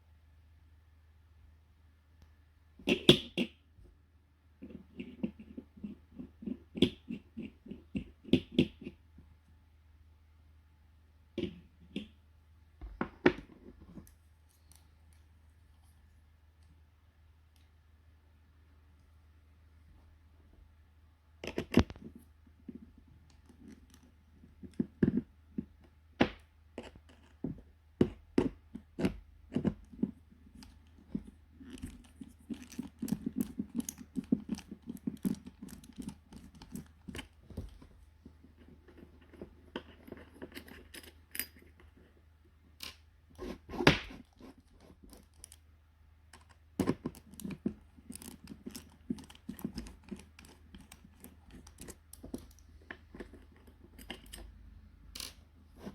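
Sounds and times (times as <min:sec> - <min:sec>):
tools clicking on plastic parts: 0:29.0 - 0:37.8, 0:46.4 - 0:54.5.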